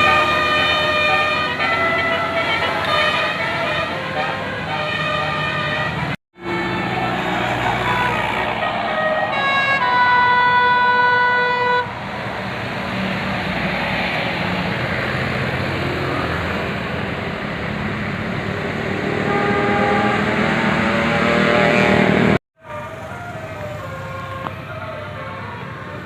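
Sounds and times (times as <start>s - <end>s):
musical air horn: 0.0s - 11.9s, 19.1s - 24.6s
heavy vehicle engine and road noise: 0.0s - 26.0s.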